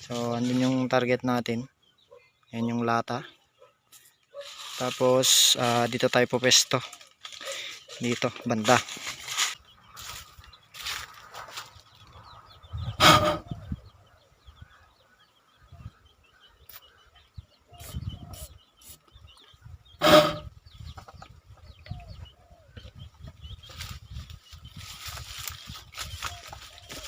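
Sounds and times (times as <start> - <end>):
chickens clucking: 0.0 - 27.0.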